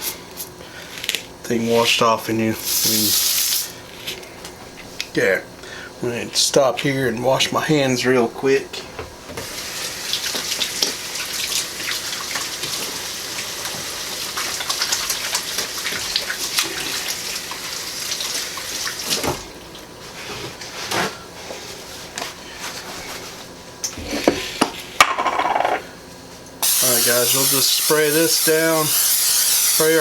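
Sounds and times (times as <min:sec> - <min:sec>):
tap water running: 0:09.0 - 0:19.9, 0:26.6 - 0:30.0.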